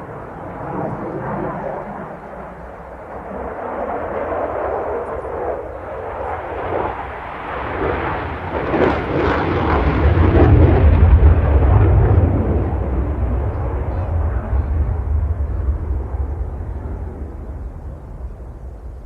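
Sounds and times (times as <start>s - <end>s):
jet engine roar: 0.0s - 19.0s
deep rumble: 8.4s - 19.0s.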